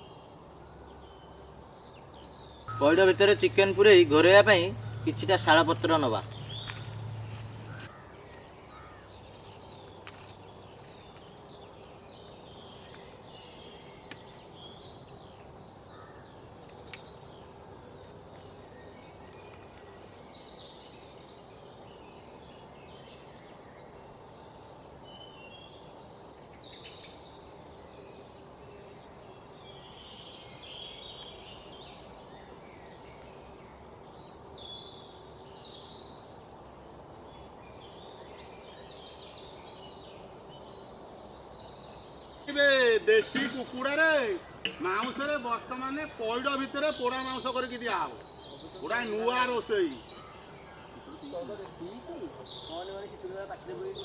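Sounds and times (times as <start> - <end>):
faint background hiss: 0.1 - 31.9, 34.1 - 54.0
bird chirps: 2.6 - 20.1, 42.3 - 54.0
crickets trilling: 2.6 - 20.1, 42.4 - 54.0.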